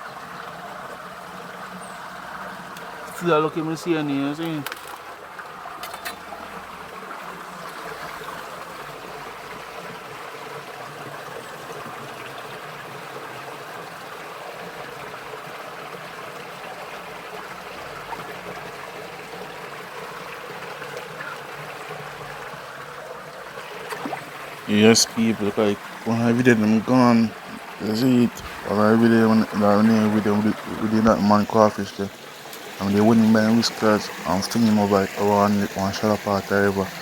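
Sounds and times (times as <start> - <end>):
river running over rocks: 0.0 - 37.0.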